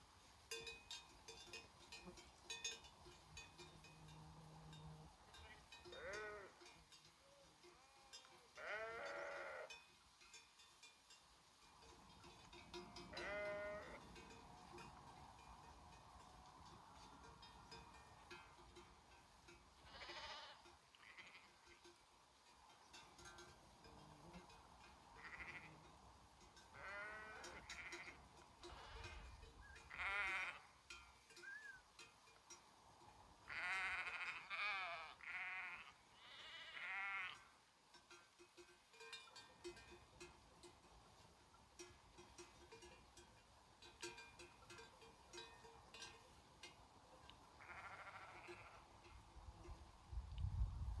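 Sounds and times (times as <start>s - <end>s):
sheep bells clinking: 0.0s - 50.1s
sheep bleating: 4.6s - 6.6s, 7.7s - 9.7s, 13.1s - 14.1s, 19.9s - 21.6s, 25.2s - 25.8s, 26.8s - 29.2s, 29.9s - 30.7s, 33.5s - 37.5s, 47.6s - 48.9s.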